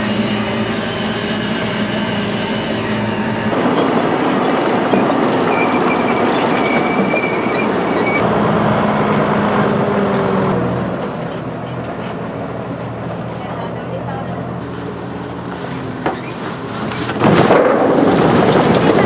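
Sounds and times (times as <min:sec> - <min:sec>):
engine hum: 0:00.0 - 0:19.0
thin high squeal: 0:04.4 - 0:08.2
mechanical rattle and clatter: 0:14.6 - 0:19.0.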